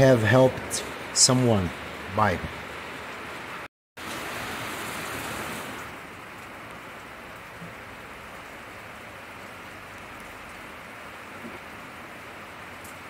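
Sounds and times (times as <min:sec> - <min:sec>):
steady hiss: 0:00.0 - 0:08.7.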